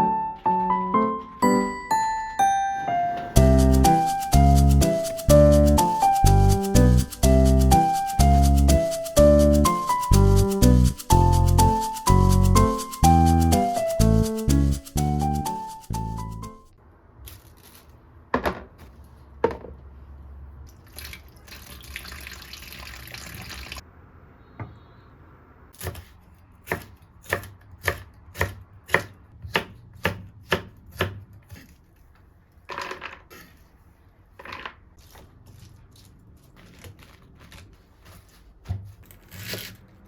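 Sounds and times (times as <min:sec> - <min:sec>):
knife chopping on cutting board: 0:25.8 - 0:31.8.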